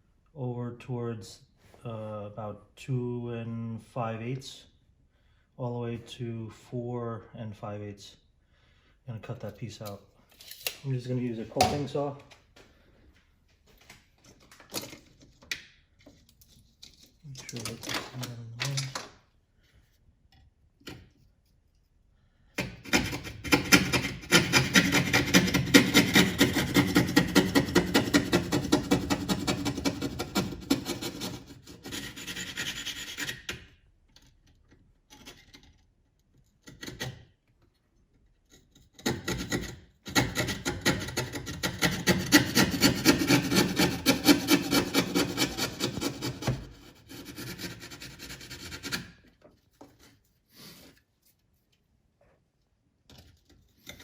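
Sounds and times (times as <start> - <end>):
coping saw cutting: 22.7 - 33.2, 39.5 - 49.1.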